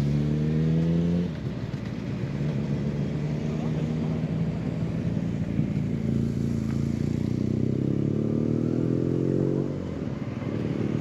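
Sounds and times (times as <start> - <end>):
motorcycle engine accelerating: 5.8 - 9.8.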